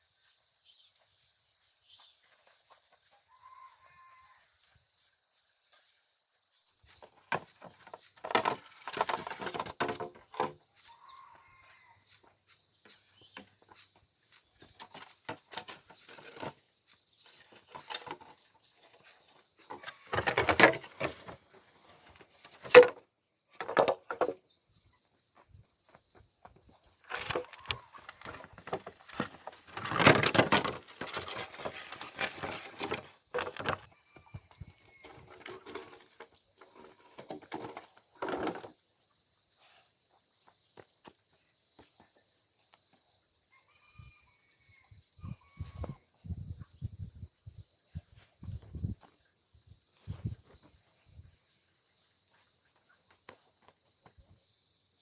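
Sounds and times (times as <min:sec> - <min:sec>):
faint insect hum: 0:00.0 - 0:55.0
timber knocking and scraping: 0:07.0 - 0:10.6, 0:14.6 - 0:23.0, 0:23.6 - 0:24.4, 0:27.0 - 0:38.7.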